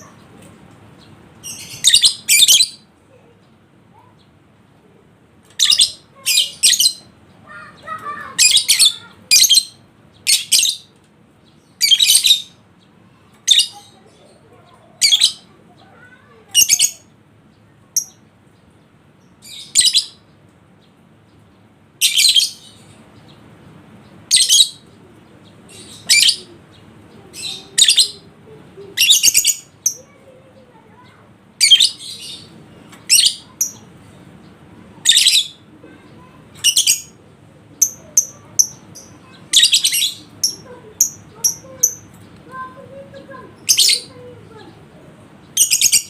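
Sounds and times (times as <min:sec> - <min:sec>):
bird chirping shrilly: 0:01.4 - 0:02.9, 0:37.8 - 0:42.1, 0:43.5 - 0:44.2, 0:45.5 - 0:46.0.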